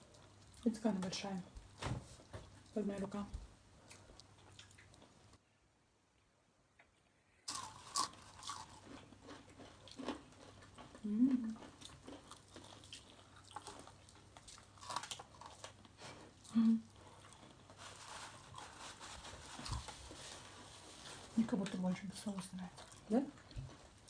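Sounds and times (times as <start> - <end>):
chewing crispy fried chicken: 3.8 - 5.4, 7.5 - 24.0.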